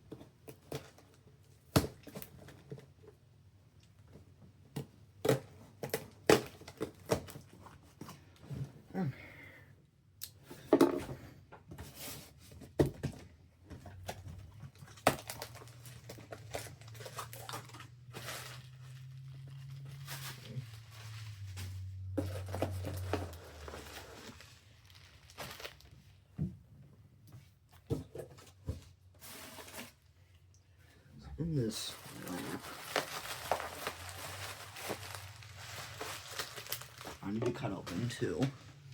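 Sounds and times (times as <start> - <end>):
packing material crinkling: 14.6 - 26.2, 31.5 - 38.6
tape and cardboard tearing: 14.9 - 25.9, 32.2 - 37.2.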